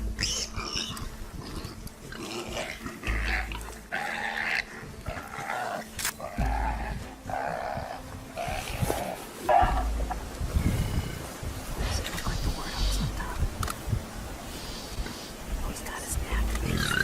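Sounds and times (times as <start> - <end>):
animals growling and snarling: 0.0 - 12.0, 16.4 - 17.0
low rumbles: 0.0 - 14.4, 15.4 - 17.0.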